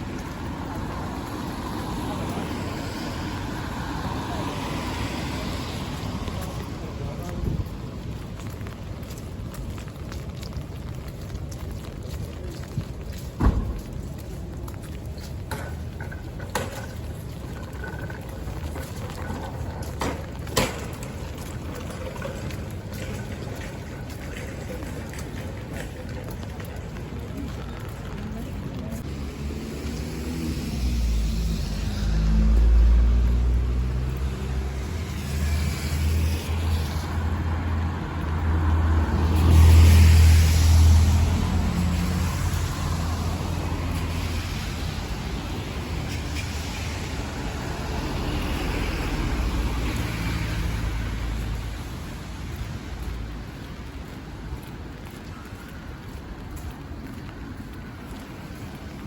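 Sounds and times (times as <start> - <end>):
steady rain on street: 0.0 - 59.0
water running and splashing: 0.0 - 59.0
vehicle passing with hiss: 29.0 - 53.2.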